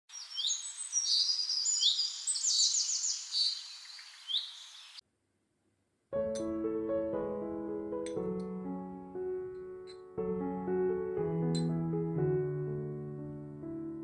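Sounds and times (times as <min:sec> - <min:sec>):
songbirds chirping and singing: 0:00.1 - 0:05.0
background hiss: 0:00.1 - 0:06.1
piano music: 0:06.1 - 0:14.0.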